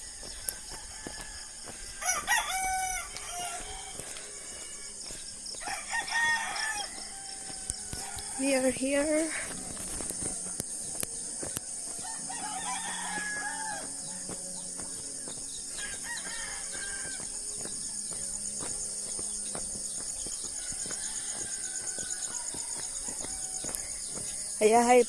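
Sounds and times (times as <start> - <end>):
rooster crowing: 0.0 - 8.8, 11.8 - 14.7, 15.7 - 18.1, 20.4 - 24.5
insects droning: 0.0 - 25.0.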